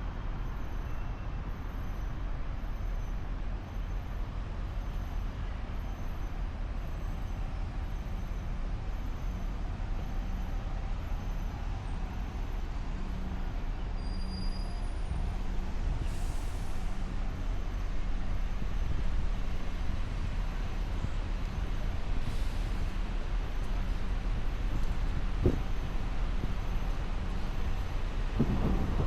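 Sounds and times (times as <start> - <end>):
traffic rumble: 14.6 - 29.0
air brakes hissing: 15.9 - 18.0, 22.1 - 23.2.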